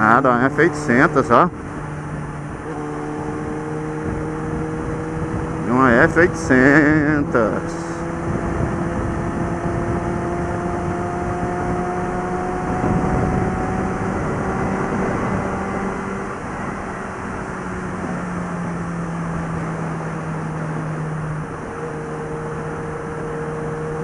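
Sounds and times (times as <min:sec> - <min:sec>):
wind noise: 0:00.0 - 0:20.2
motorcycle engine cruising: 0:00.0 - 0:24.0.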